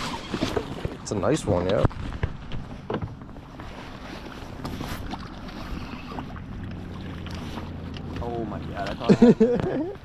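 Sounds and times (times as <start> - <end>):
boat motor humming: 2.2 - 10.0.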